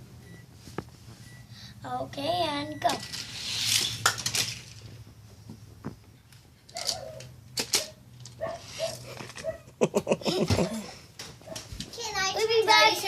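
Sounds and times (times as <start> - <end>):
toy cars running down plastic track: 2.8 - 4.8, 7.6 - 9.3.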